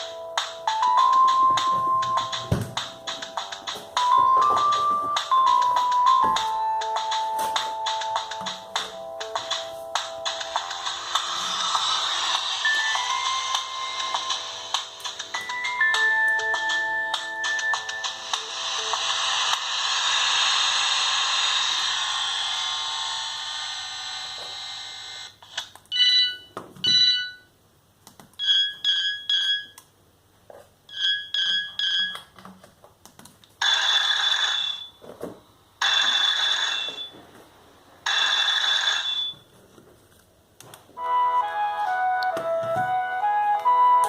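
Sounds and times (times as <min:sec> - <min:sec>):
electronic ringtone: 0:00.0 - 0:21.0, 0:25.9 - 0:27.5, 0:28.4 - 0:29.8, 0:30.9 - 0:32.2, 0:33.6 - 0:35.0, 0:35.8 - 0:37.2, 0:38.1 - 0:39.5, 0:41.0 - 0:44.0
telephone-style rings: 0:33.6 - 0:35.0, 0:35.8 - 0:37.1, 0:38.1 - 0:39.5.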